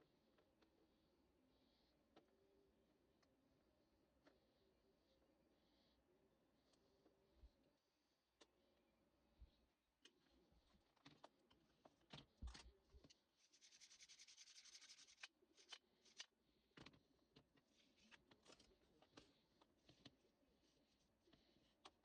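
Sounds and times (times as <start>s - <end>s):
rapid fine rasping: 13.4s - 15.3s.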